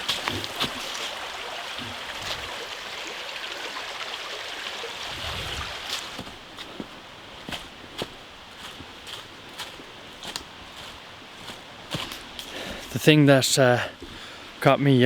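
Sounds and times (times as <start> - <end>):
stream water rushing: 0.0 - 6.5.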